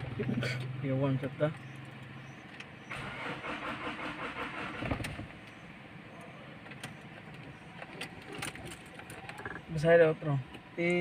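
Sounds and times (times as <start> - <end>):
engine cranking without starting: 2.8 - 5.3.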